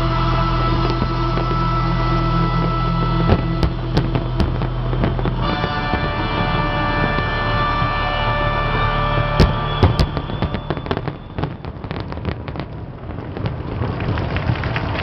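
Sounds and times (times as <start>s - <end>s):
fireworks bangs: 0.0s - 15.0s
fireworks crackling pops: 0.0s - 15.0s.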